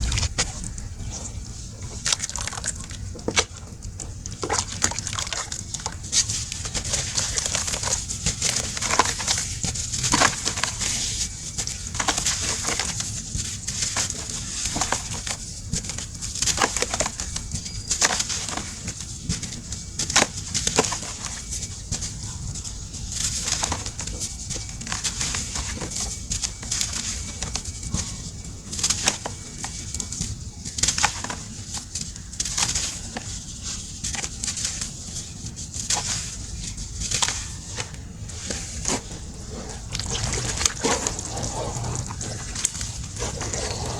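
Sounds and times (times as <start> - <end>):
brittle material crunching: 35.9 - 43.9.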